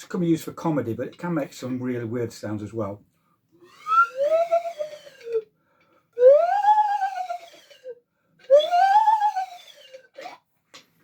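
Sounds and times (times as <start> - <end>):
slide whistle swooping: 3.6 - 5.4, 6.2 - 10.4.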